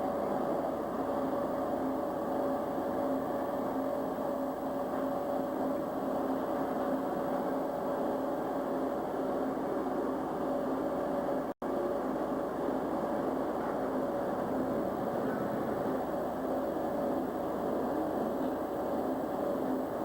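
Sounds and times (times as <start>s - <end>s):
steady mechanical drone: 0.0s - 20.0s.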